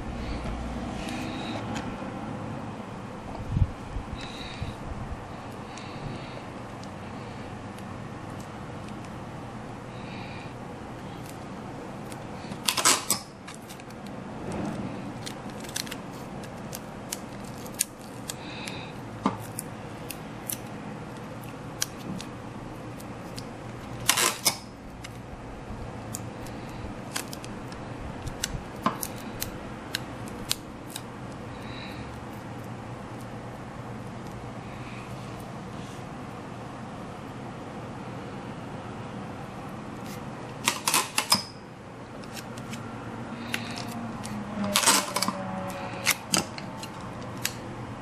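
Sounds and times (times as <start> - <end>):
scissors snipping: 15.2 - 22.3.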